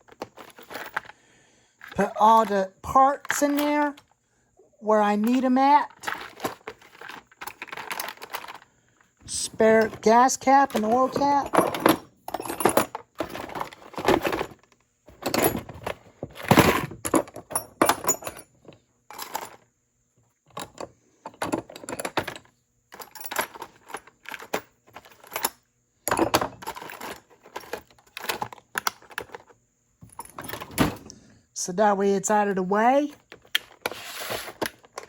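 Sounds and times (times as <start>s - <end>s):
tools clattering into toolbox: 0.0s - 1.1s, 1.8s - 4.1s, 5.2s - 8.6s, 9.3s - 18.5s, 19.1s - 19.6s, 20.5s - 31.1s.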